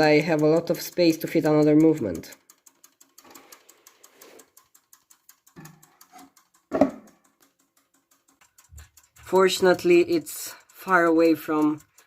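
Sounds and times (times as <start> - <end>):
rapid clock ticking: 0.0 - 12.0
thump: 6.7 - 7.0.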